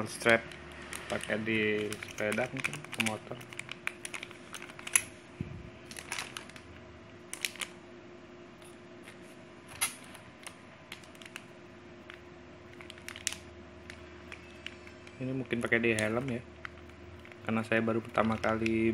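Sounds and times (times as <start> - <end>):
faint steady hum: 0.0 - 18.9
plastic clicks and rustles: 0.2 - 5.1, 5.9 - 6.6, 9.8 - 18.9.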